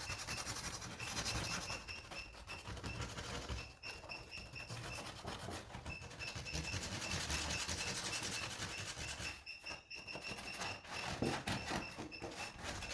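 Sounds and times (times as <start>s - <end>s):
sandpaper rasping on wood: 0.0s - 9.4s.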